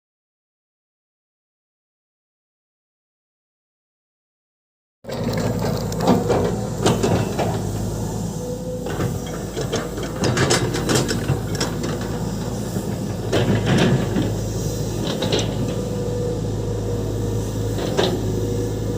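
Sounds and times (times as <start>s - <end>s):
excavator diesel engine running: 5.0s - 18.9s
hiss: 5.9s - 18.9s.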